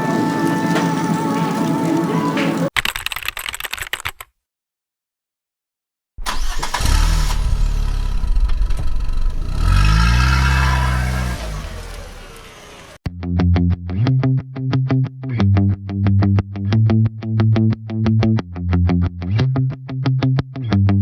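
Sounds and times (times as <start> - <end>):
vehicle engine revving: 6.3 - 13.0.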